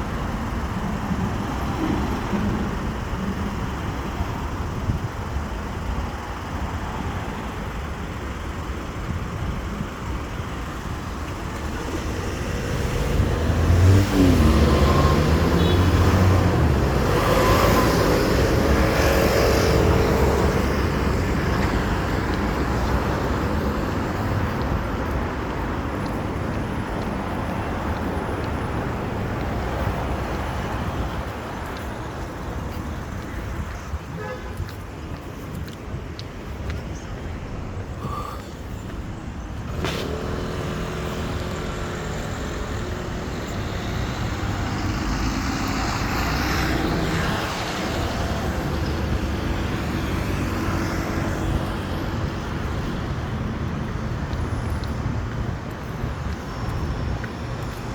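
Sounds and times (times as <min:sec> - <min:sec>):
traffic low rumble: 0:00.0 - 0:57.9
vehicle engine passing: 0:11.8 - 0:30.9.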